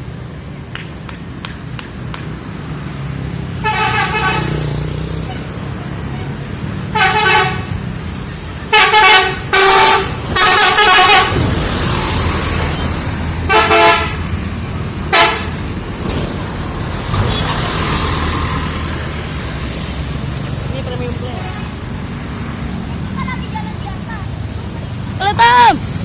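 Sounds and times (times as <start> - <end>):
bus engine running: 0.0 - 26.0
bus musical horn blasts: 3.6 - 4.8, 6.9 - 7.8, 8.7 - 11.6, 13.5 - 14.4, 15.1 - 15.6.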